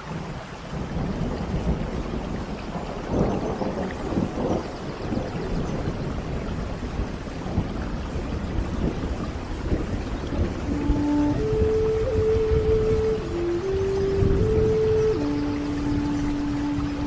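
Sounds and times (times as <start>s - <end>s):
rain falling: 0.0s - 17.0s
rumble of thunder: 0.0s - 17.0s
soft held music notes: 10.0s - 17.0s.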